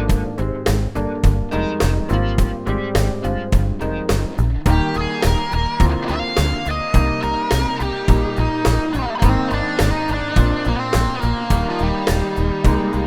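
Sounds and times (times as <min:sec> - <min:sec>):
steady drum beat: 0:00.0 - 0:01.5, 0:04.7 - 0:13.0
guitar instrumental music: 0:00.0 - 0:13.0.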